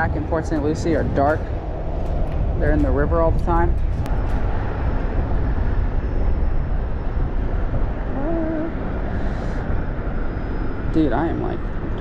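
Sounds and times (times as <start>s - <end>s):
low rumbling noise: 0.0s - 12.0s
man humming: 8.1s - 8.8s.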